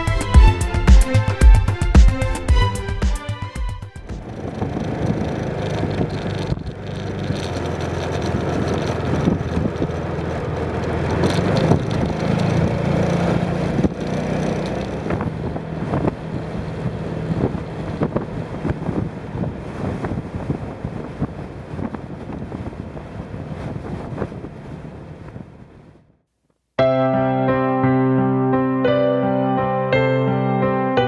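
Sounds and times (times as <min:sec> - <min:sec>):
background music: 0:00.0 - 0:04.3, 0:26.8 - 0:31.0
motorcycle engine running: 0:03.9 - 0:19.1
wind on microphone: 0:04.0 - 0:26.0.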